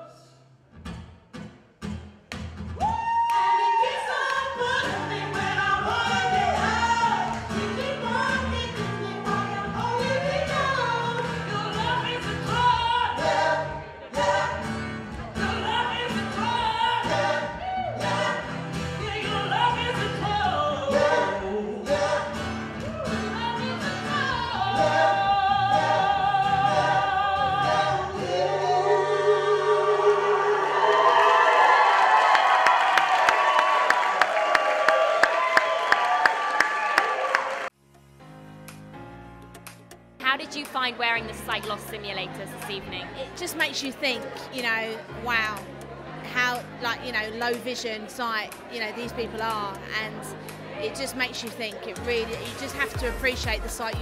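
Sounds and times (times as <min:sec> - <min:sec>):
person singing: 0:15.3 - 0:31.2
steady bass notes: 0:52.0 - 0:54.0
regular beat: 0:52.3 - 0:54.0.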